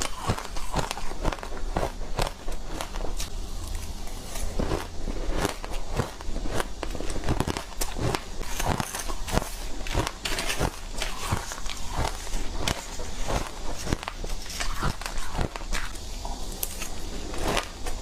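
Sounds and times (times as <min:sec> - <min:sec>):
ice being chewed: 0:00.0 - 0:18.0.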